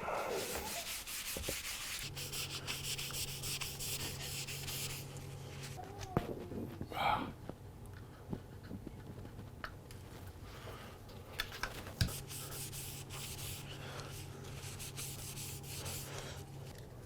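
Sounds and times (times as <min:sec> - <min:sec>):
hand sanding strokes: 0:00.0 - 0:05.7, 0:12.0 - 0:16.4.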